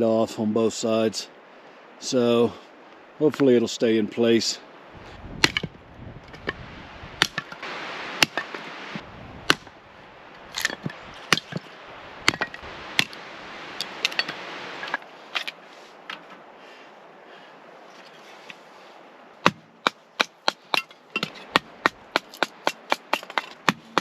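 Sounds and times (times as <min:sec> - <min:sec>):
steady hiss: 0:00.0 - 0:05.4, 0:06.6 - 0:24.0
axe chopping wood: 0:05.4 - 0:05.8, 0:07.2 - 0:07.6, 0:08.2 - 0:08.6, 0:09.5 - 0:09.7, 0:10.5 - 0:11.6, 0:12.2 - 0:13.2, 0:19.4 - 0:24.0.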